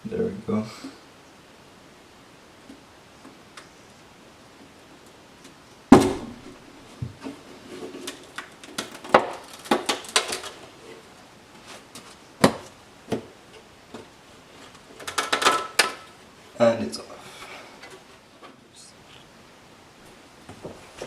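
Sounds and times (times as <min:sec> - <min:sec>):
sharp knocks: 0:05.9 - 0:07.2.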